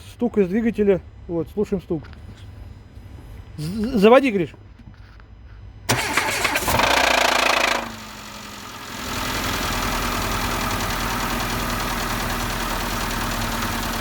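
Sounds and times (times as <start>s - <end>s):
car engine idling: 5.9s - 14.0s.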